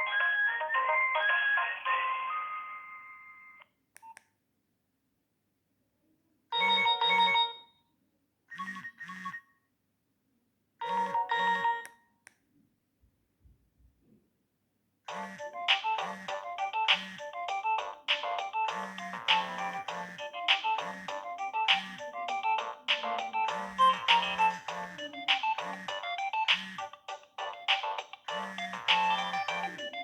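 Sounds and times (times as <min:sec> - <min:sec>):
phone ringtone tune: 0:00.0 - 0:03.6, 0:06.6 - 0:07.7, 0:10.8 - 0:11.8, 0:15.1 - 0:30.0.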